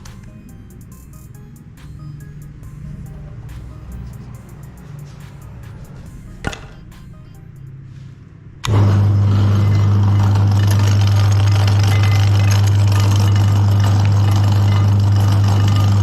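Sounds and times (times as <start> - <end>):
meat grinder motor humming: 8.6 - 16.0.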